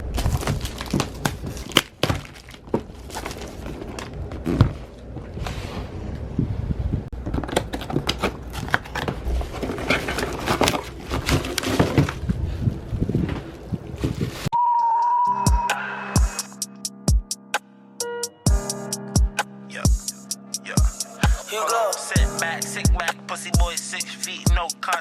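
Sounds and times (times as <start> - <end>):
crinkling: 0.0 - 6.2, 7.2 - 14.5.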